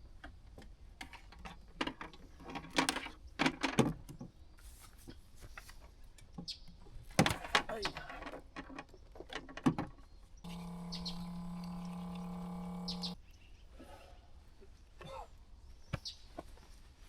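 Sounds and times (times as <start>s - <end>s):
clicks and knocks of handling: 0.2s - 10.1s
electric motor hum: 10.4s - 13.2s.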